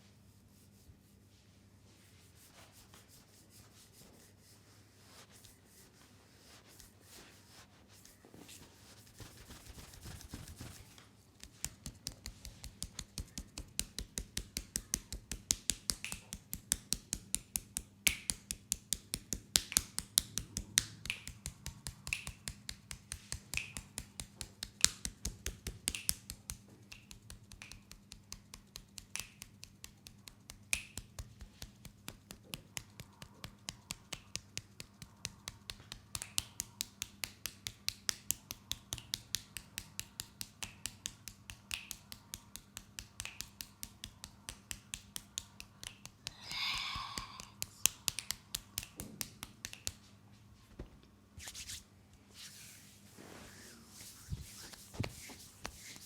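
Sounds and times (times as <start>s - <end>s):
hands rubbing oiled skin: 1.9s - 50.3s, 51.4s - 56.0s
hands slapping skin: 9.1s - 50.1s, 54.3s - 56.0s.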